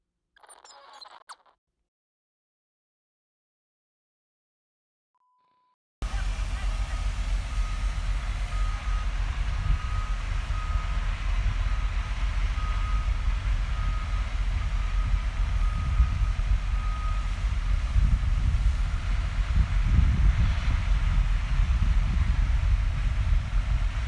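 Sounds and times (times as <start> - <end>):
heavy engine rumbling: 6.0 - 24.0
reversing alarm beeping: 6.0 - 24.0.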